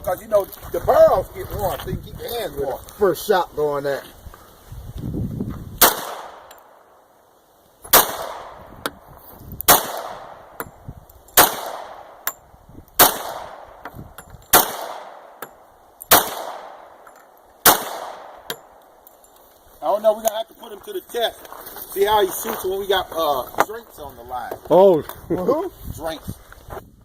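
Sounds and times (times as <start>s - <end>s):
gunshots with echo: 5.8s - 6.5s, 7.9s - 8.6s, 9.7s - 10.6s, 11.4s - 12.2s, 13.0s - 13.8s, 14.5s - 15.4s, 16.1s - 17.0s, 17.6s - 18.5s.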